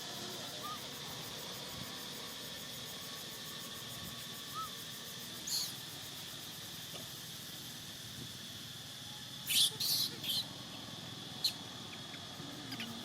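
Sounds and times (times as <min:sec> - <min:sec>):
background hiss: 0:00.0 - 0:13.0
baby monkey squeaking: 0:09.5 - 0:10.5.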